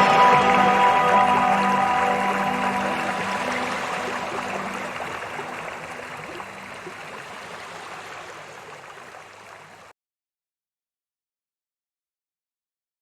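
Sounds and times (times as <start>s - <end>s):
soft sustained music tones: 0.0s - 7.6s
waterfall rushing: 0.0s - 9.8s.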